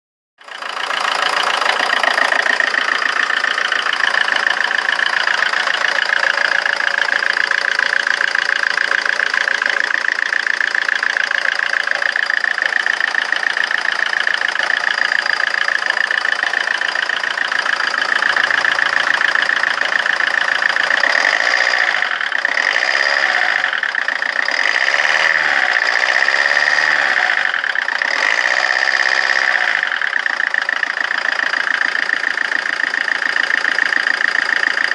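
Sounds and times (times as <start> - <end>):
diesel engine idling roughly: 0.4 - 34.9.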